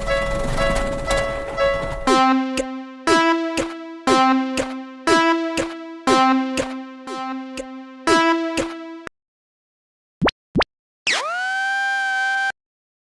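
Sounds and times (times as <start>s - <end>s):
synthesized crossing chime: 0.0s - 9.0s
held low synth note: 2.1s - 9.0s.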